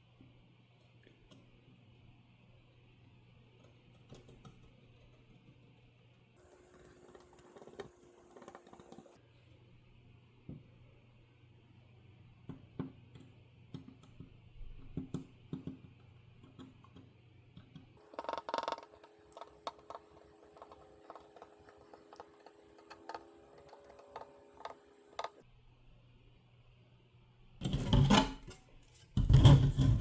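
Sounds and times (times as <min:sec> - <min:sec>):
small objects clicking: 0:18.0 - 0:25.4.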